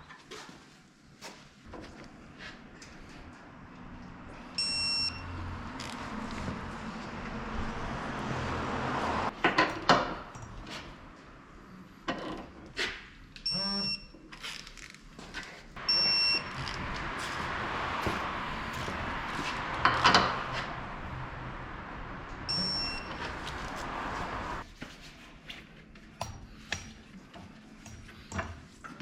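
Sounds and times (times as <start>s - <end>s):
short electronic beeps: 4.6s - 5.3s, 13.5s - 14.1s, 15.9s - 16.6s, 22.5s - 23.2s.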